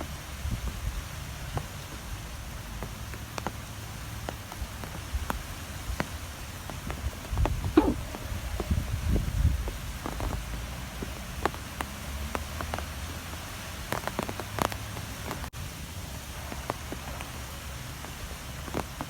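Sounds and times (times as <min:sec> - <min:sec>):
sharp ticks and taps: 0:01.5 - 0:08.8, 0:09.6 - 0:15.5
strong wind blowing: 0:07.1 - 0:10.0.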